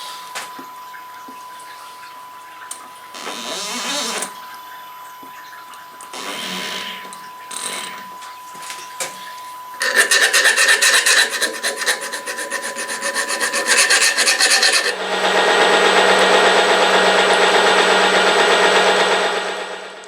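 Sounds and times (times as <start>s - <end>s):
hand file rasping on metal: 9.8s - 15.0s.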